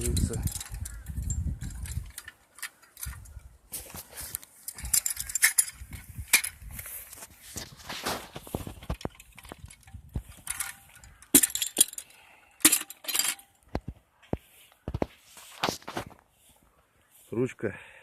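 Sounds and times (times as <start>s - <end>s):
metal clicks of hand winch: 0.0s - 3.4s, 4.3s - 6.6s, 8.8s - 13.7s
metal parts rattling: 0.0s - 3.4s, 4.6s - 6.9s, 8.3s - 13.6s.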